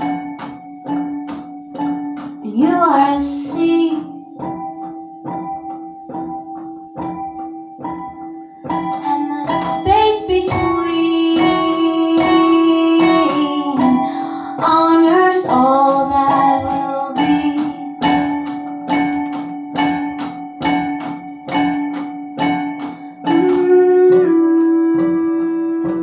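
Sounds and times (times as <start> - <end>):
instrumental accompaniment: 0.0 - 26.0
repeated plucked notes: 0.0 - 26.0
woman singing long notes: 2.4 - 4.4, 8.9 - 18.5, 23.1 - 26.0.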